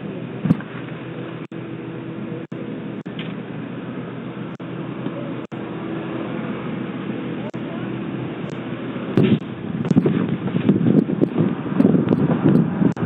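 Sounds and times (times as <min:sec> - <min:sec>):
steady mechanical hum: 0:00.0 - 0:13.0.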